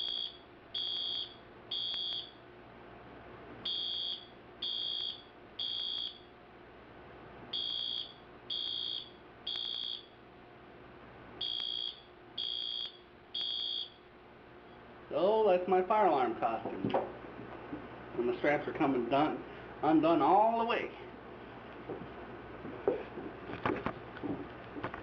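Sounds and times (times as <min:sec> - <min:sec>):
fire alarm horn beeping: 0:00.0 - 0:02.4, 0:03.6 - 0:06.4, 0:07.5 - 0:10.2, 0:11.4 - 0:14.1.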